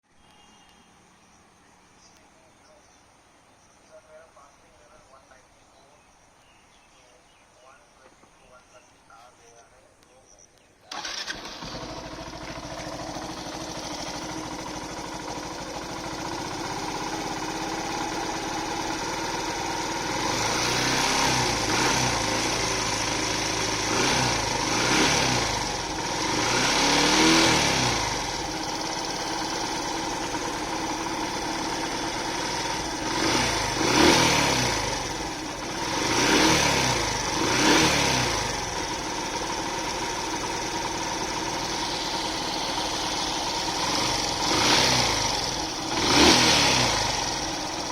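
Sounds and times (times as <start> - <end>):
engine rattling: 10.9 - 47.9
motorcycle engine idling and revving: 10.9 - 47.9.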